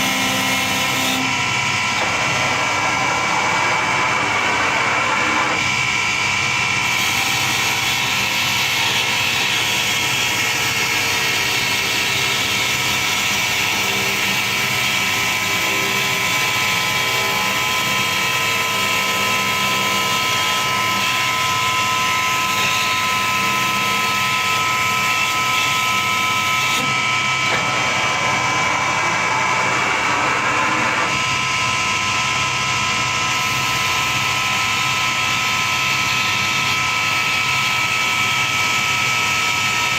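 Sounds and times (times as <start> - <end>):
wood lathe machine whine: 0.0 - 39.9.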